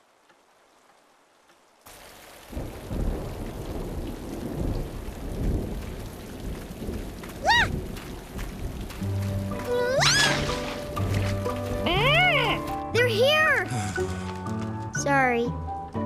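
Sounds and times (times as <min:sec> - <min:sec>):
rain: 0:00.0 - 0:15.9
low rumbling thunder: 0:02.5 - 0:09.0.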